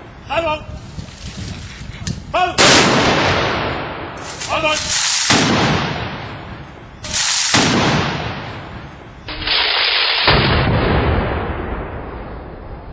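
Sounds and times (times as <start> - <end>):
loud blank gunshots: 2.6 - 12.6
rolling echo: 2.6 - 12.9.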